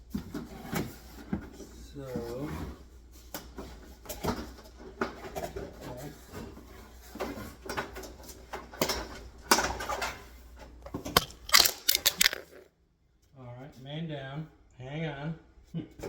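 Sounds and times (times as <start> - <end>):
light fixture parts rattling: 4.1 - 12.6.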